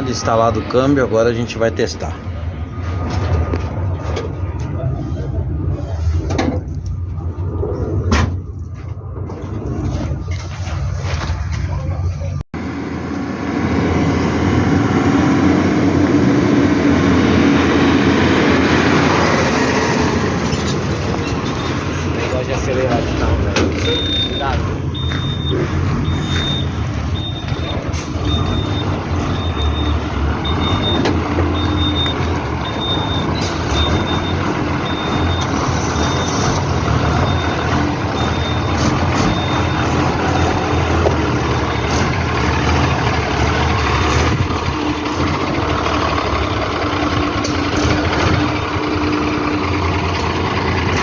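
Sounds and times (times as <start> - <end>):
truck engine running: 0.0 - 51.0
reversing alarm beeping: 21.2 - 44.2.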